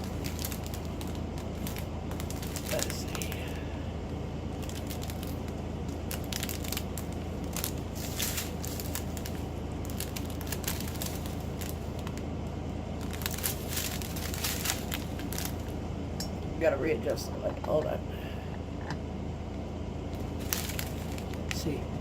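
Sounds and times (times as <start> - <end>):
plastic bags crinkling: 0.0 - 3.8, 4.5 - 12.3, 13.0 - 15.8, 20.1 - 21.8
steady low hum: 0.0 - 22.0.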